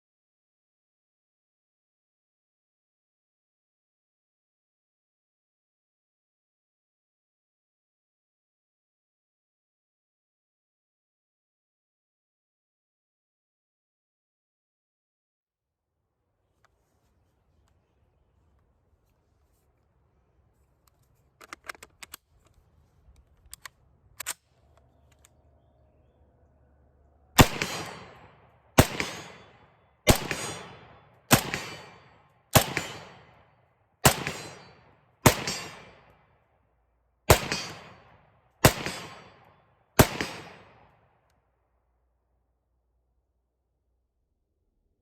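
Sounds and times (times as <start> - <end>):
metallic handling clicks: 20.6 - 25.4
rifle shots: 27.4 - 36.2, 37.3 - 41.0.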